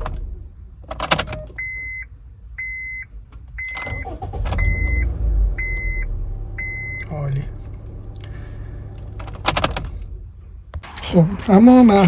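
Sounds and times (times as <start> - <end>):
car engine starting and running: 0.0 - 12.0
car warning chime beeping: 1.3 - 10.0.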